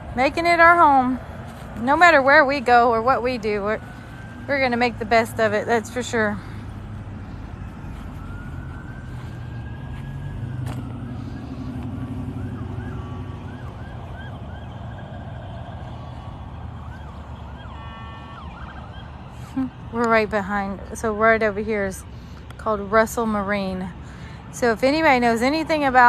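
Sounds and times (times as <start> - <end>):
emergency vehicle siren: 0.0 - 26.0
low traffic rumble: 0.0 - 26.0.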